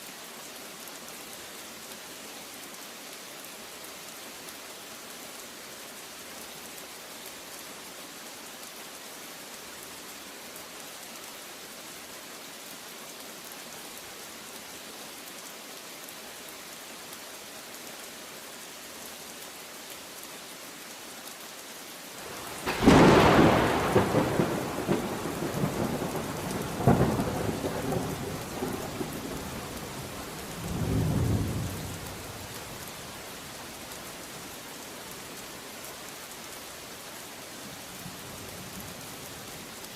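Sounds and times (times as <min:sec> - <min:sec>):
heavy rain: 0:00.0 - 0:39.9
thunder crashing and rumbling: 0:22.5 - 0:29.1.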